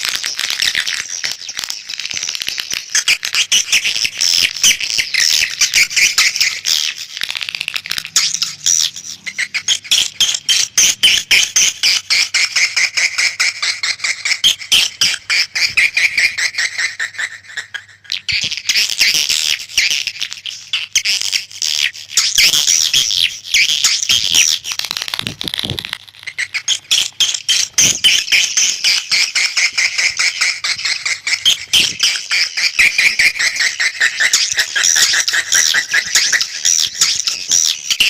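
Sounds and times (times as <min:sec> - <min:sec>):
rapid ticking clicks: 0:00.0 - 0:38.0
swiftlets twittering: 0:22.2 - 0:38.0.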